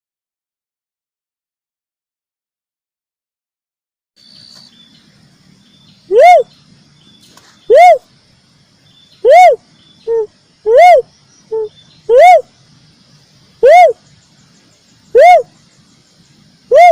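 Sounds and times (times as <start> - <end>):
dove hooting call: 6.1 - 6.5, 7.7 - 8.1, 9.2 - 12.5, 13.6 - 14.0, 15.1 - 15.5, 16.6 - 16.9.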